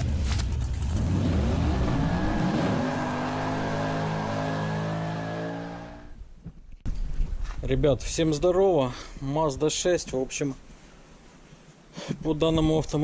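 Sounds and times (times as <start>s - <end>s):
car engine revving: 0.6s - 6.2s.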